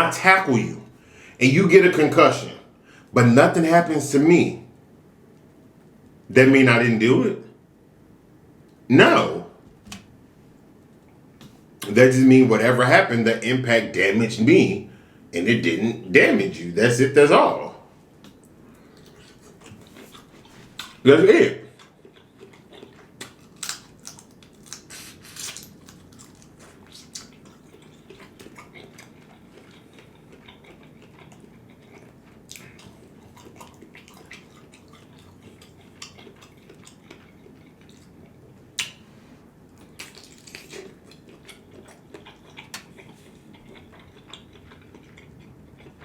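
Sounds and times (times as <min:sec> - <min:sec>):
chewing and mouth sounds: 0:18.2 - 0:39.0, 0:39.7 - 0:46.0.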